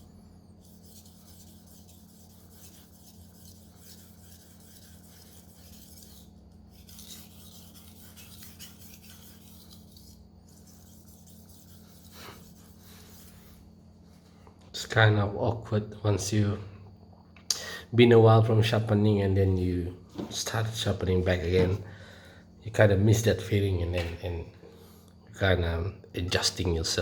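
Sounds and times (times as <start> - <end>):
steady low hum: 0.0 - 27.0
knife scraping on whetstone: 0.6 - 13.7.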